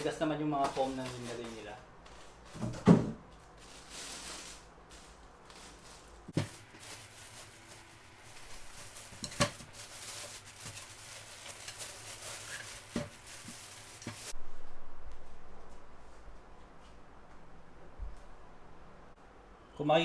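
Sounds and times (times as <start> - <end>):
foam packing rustling: 0.0 - 14.4.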